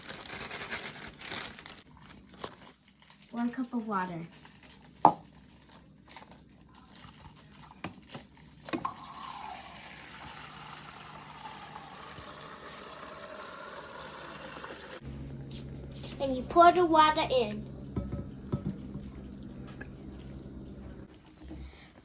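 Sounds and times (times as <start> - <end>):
water running into a cup: 8.8 - 15.0.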